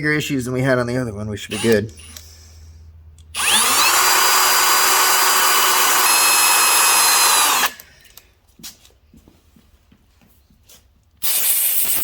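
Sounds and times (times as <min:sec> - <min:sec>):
power drill boring into metal: 0:01.5 - 0:02.2, 0:03.4 - 0:07.8.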